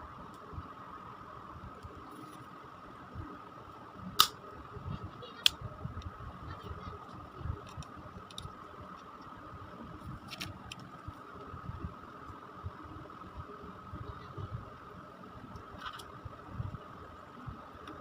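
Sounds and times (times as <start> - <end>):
faint high hum: 0.0 - 18.0.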